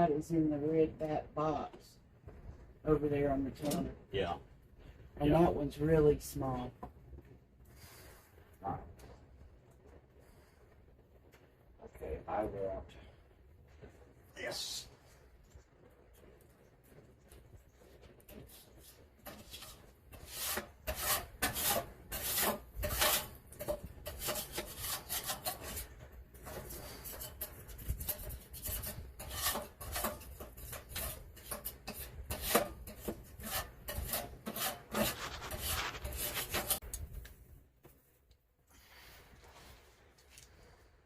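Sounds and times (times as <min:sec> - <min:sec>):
hands rubbing and scraping tools: 0:18.3 - 0:37.1.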